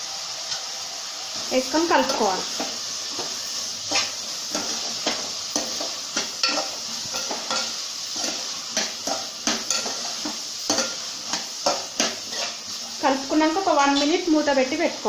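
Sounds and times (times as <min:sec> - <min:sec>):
food sizzling in a frying pan: 0:00.0 - 0:15.0
spoon scraping and knocking pan: 0:01.8 - 0:13.0.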